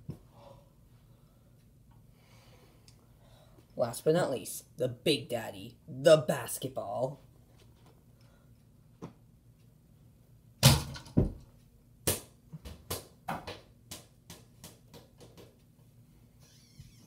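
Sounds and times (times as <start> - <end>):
basketball bouncing on floor: 10.6 - 11.4, 12.0 - 15.6
ball hitting ceiling fan: 10.6 - 15.6.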